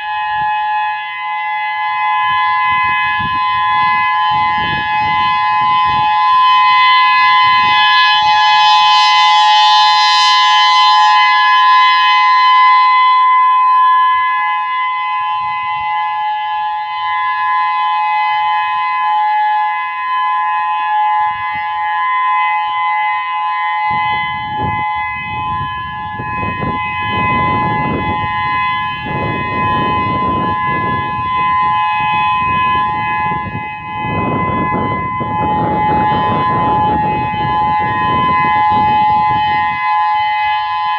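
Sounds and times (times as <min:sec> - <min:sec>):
electronic warning siren steady tone: 0:00.0 - 0:40.9
gusty low rushing noise: 0:24.0 - 0:39.4.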